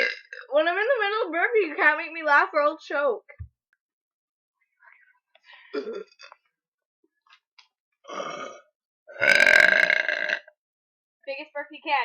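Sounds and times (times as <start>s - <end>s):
person burping: 0.0s - 0.5s, 5.7s - 6.4s, 8.1s - 10.5s.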